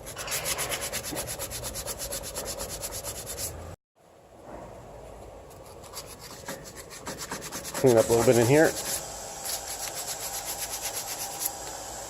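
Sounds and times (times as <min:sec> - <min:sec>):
sandpaper scraping metal: 0:00.0 - 0:03.6, 0:05.6 - 0:11.7.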